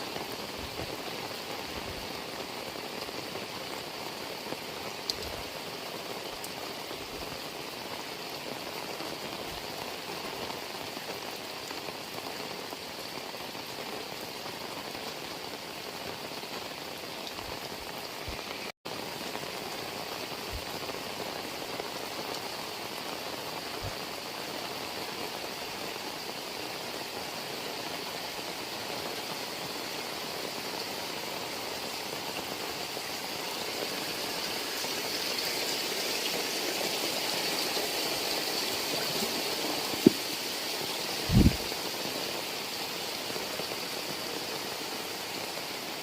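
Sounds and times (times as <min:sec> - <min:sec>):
heavy rain falling: 0:00.0 - 0:46.0.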